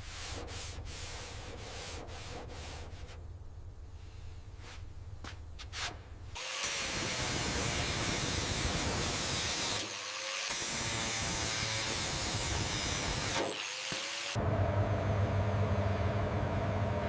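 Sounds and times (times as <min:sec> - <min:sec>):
short scraping sounds: 0:05.6 - 0:06.1
low hum: 0:14.4 - 0:17.0.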